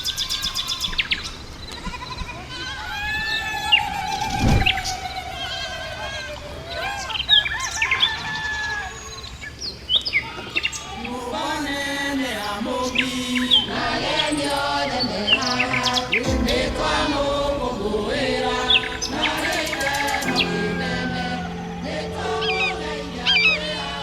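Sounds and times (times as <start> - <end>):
group of voices chanting: 11.0 - 24.0
birds chirping: 12.2 - 24.0
low steady sound: 16.2 - 24.0.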